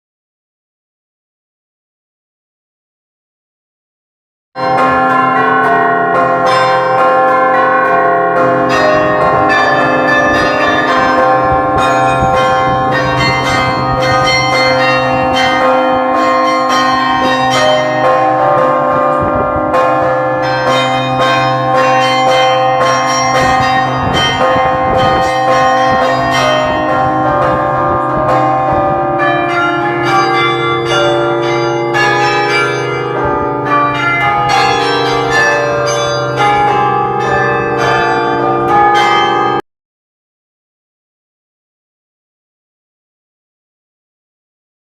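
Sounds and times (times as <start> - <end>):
carillon bells ringing: 4.6 - 39.6.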